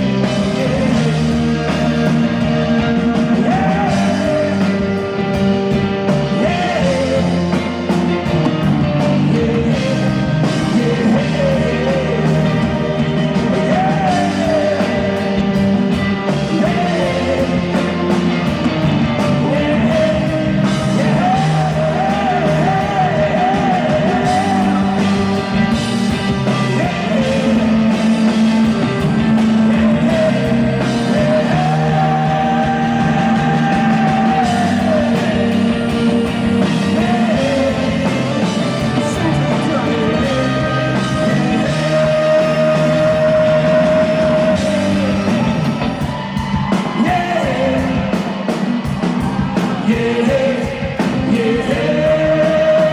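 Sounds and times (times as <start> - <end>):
live rock band playing: 0.0 - 52.9.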